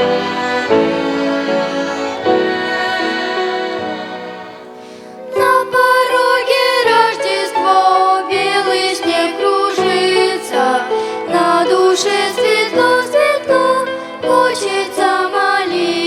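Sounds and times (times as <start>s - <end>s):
violin ensemble chords: 0.0s - 16.0s
person singing with vibrato: 2.1s - 16.0s.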